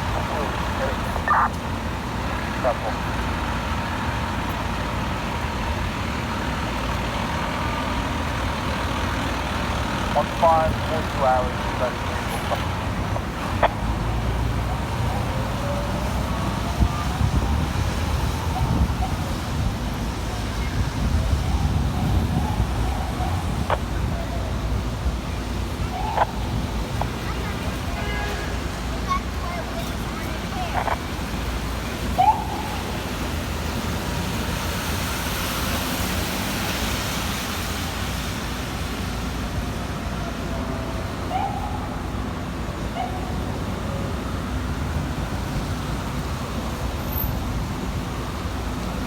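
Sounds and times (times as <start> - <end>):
street traffic rumble: 0.0 - 49.0
wind buffeting microphone: 12.6 - 27.8.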